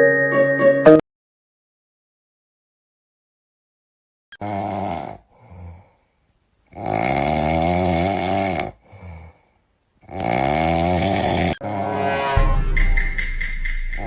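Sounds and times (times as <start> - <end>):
loud snoring: 4.4 - 5.9, 6.7 - 9.3, 10.0 - 12.0
quiet breath: 5.2 - 6.4, 8.8 - 9.8.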